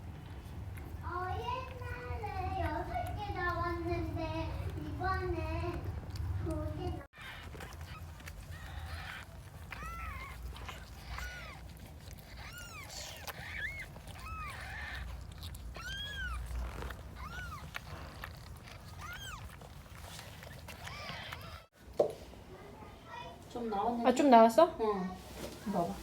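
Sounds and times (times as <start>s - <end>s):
kittens mewing: 1.1s - 21.7s.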